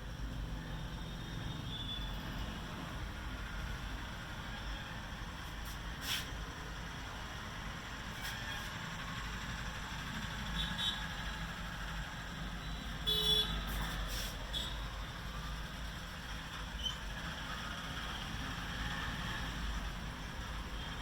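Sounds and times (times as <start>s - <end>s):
street traffic: 0.0s - 21.0s
vehicle horn toot: 12.6s - 13.8s.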